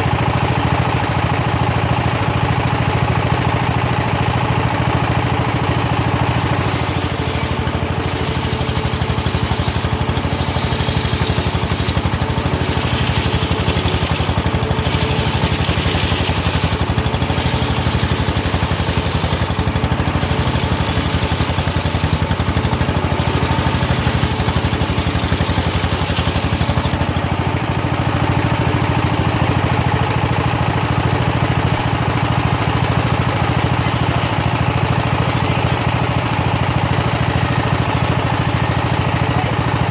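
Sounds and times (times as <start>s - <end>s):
saw bench engine drone: 0.0s - 39.9s
circular blade ripping wood: 6.2s - 19.6s.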